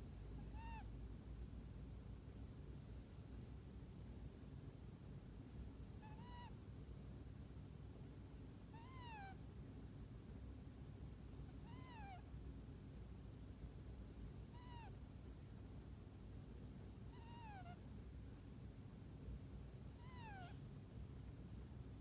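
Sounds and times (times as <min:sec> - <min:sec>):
kitten snoring squeaky whistle: 0:00.4 - 0:00.9, 0:17.1 - 0:17.8.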